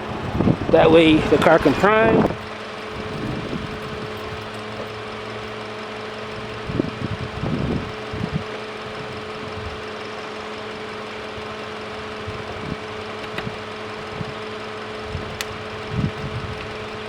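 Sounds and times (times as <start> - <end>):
steady mechanical hum: 0.0 - 17.0
sharp tick: 15.4 - 15.6.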